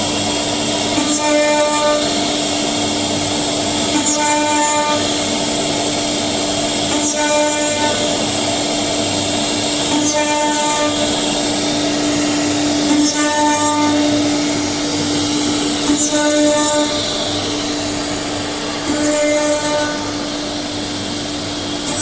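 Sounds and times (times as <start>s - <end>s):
router spindle whine: 0.0s - 22.0s.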